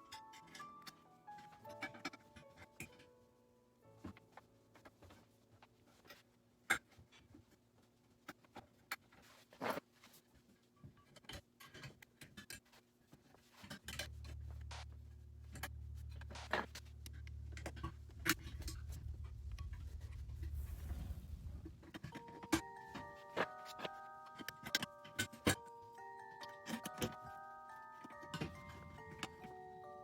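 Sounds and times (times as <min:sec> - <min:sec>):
steady low hum: 0:13.8 - 0:22.5.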